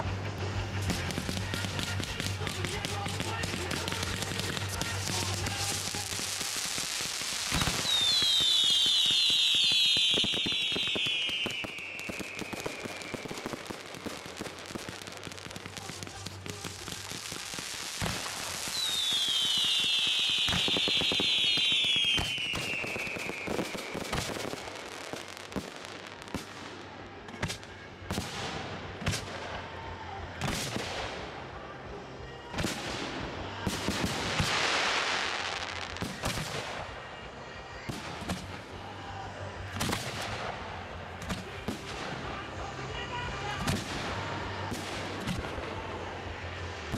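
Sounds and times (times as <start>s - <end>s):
fireworks whistling down in pitch: 0.6s - 26.8s.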